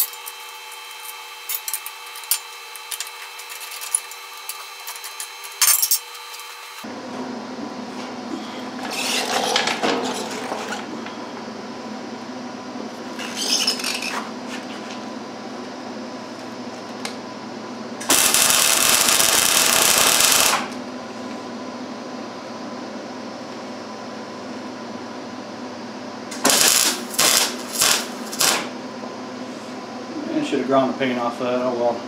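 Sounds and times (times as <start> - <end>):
steady hum: 0.0 - 32.0
metal parts clinking: 1.5 - 6.2
loud harsh steady noise: 18.0 - 20.8.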